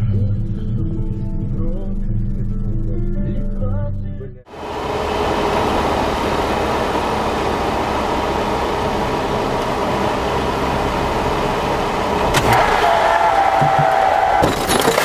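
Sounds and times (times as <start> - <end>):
vehicle engine and road noise: 4.4 - 15.0.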